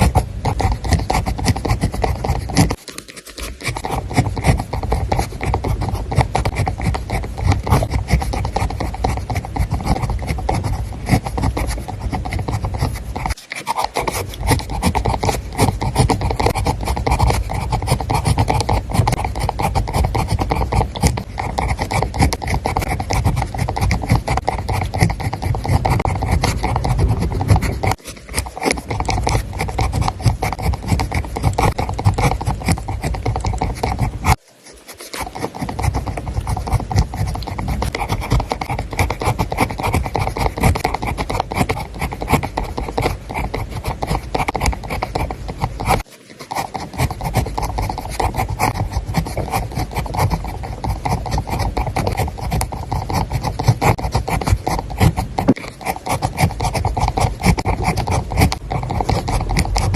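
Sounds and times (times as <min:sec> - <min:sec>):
pen scratching on paper: 0:00.0 - 0:59.9.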